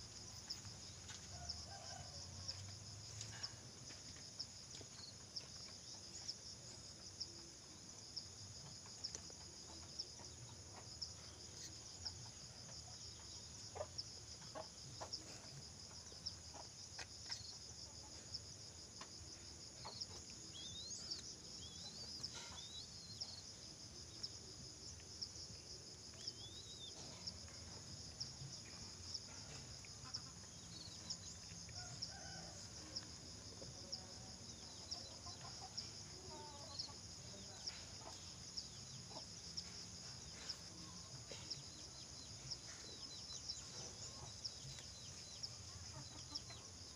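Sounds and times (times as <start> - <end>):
insect chirring: 0.0 - 46.9
faint clucking bird calls: 8.6 - 23.5, 33.6 - 46.8.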